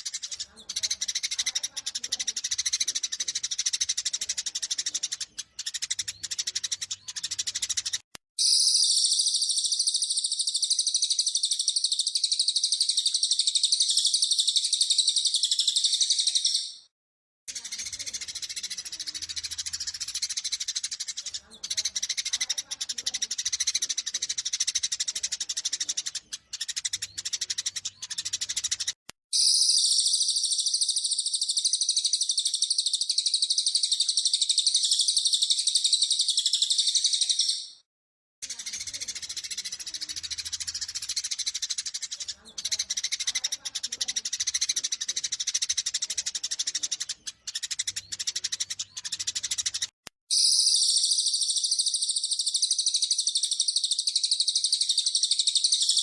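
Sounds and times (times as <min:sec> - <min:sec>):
high fast bird trill: 0:00.0 - 0:16.9, 0:17.5 - 0:37.8, 0:38.4 - 0:56.0
sparrows chirping: 0:00.0 - 0:16.9, 0:17.5 - 0:37.8, 0:38.4 - 0:56.0.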